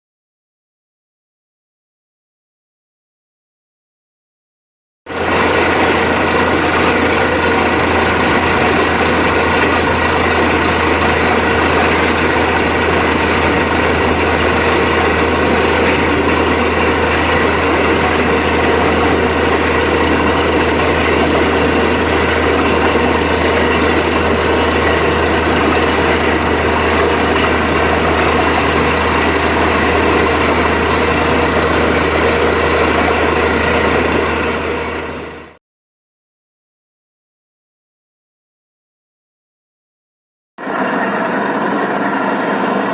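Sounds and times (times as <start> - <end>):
drilling rig engine running: 5.1 - 35.6, 40.6 - 42.9.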